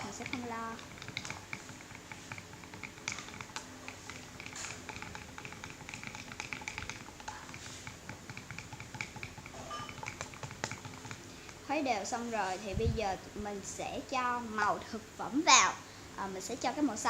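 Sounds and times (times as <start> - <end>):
stirrer tapping container sides: 0.0 - 12.6
glue being stirred in a container: 0.0 - 13.2.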